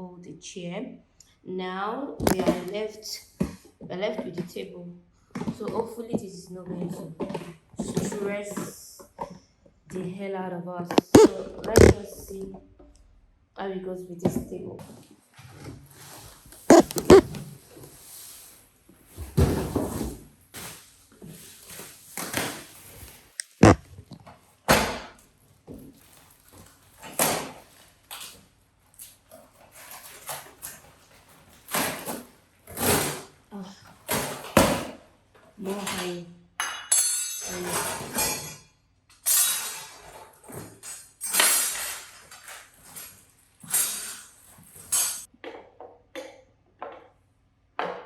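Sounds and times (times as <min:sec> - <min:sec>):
scraping of table parts: 0:10.9 - 0:12.3, 0:16.7 - 0:17.4.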